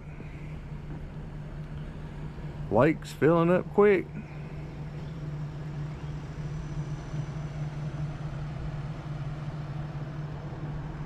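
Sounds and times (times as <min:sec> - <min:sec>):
vehicle engine humming: 0:00.0 - 0:11.0.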